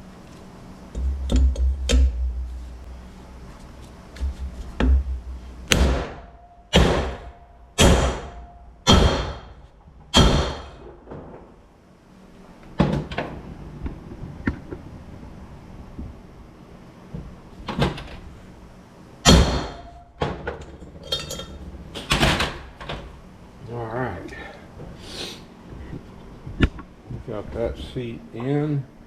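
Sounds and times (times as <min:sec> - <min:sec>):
hammer striking metal: 0:05.7 - 0:10.8, 0:19.3 - 0:20.1.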